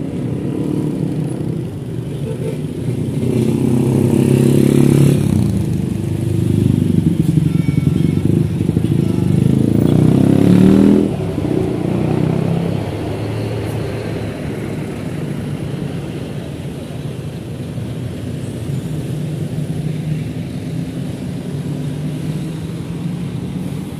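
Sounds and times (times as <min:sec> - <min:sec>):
bus engine running: 0:00.0 - 0:23.9.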